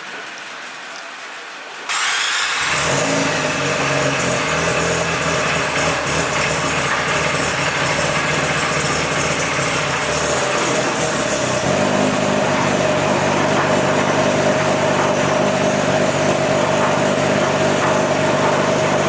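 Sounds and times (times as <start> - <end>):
dynamometer mechanical drone: 2.6 - 19.0.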